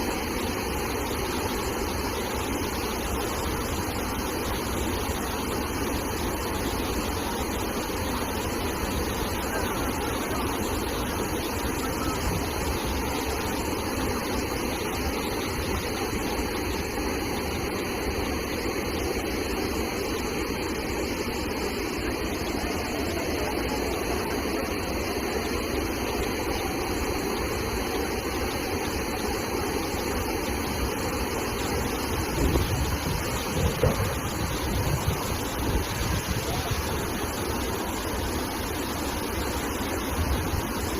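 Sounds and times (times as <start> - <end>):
flood water rushing: 20.8 - 40.9.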